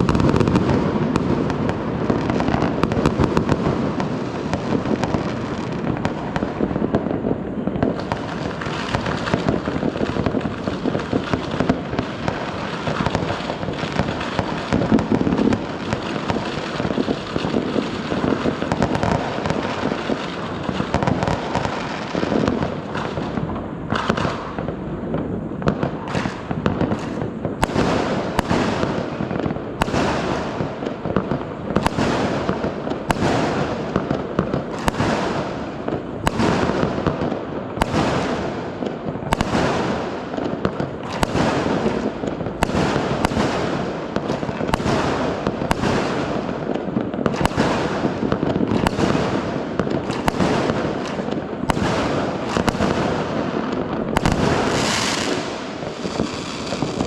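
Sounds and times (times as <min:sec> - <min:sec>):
firework bangs: 0:00.0 - 0:57.0
fireworks crackling: 0:00.0 - 0:57.0.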